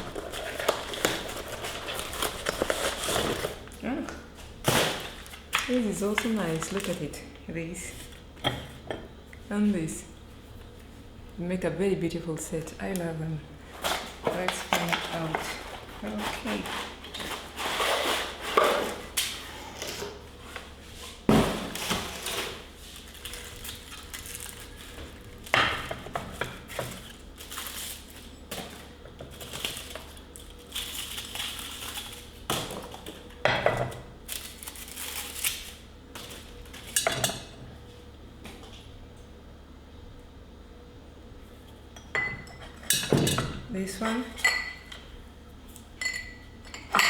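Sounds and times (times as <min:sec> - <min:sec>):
packaging rustling and crinkling: 0:00.0 - 0:03.8, 0:04.4 - 0:07.2, 0:21.4 - 0:25.5, 0:26.3 - 0:33.4, 0:34.2 - 0:37.0
dishes knocking and clinking: 0:42.0 - 0:43.6.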